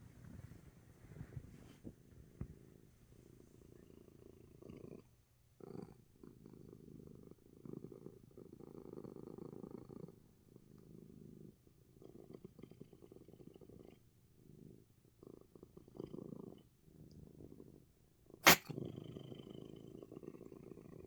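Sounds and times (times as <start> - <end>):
cat purring: 0.0 - 21.0
short sharp burst: 18.4 - 18.7.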